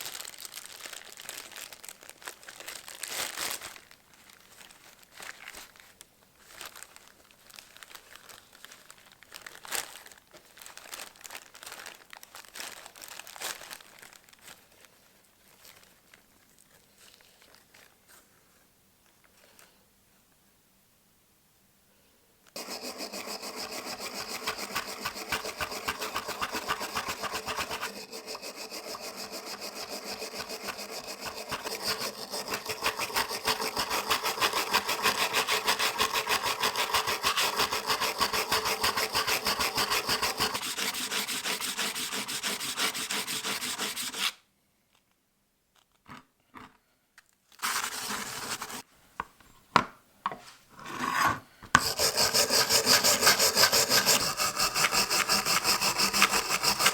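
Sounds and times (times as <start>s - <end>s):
hand tool scraping surface: 22.6s - 44.4s, 47.6s - 48.8s, 50.8s - 56.9s.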